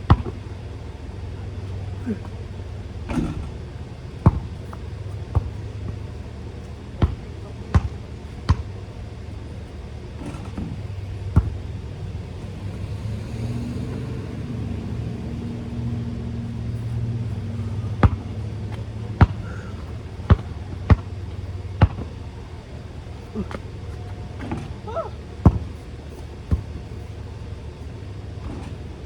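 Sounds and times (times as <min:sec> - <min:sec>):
basketball bouncing on pavement: 0:00.0 - 0:29.0
passing car engine hum: 0:10.8 - 0:21.8.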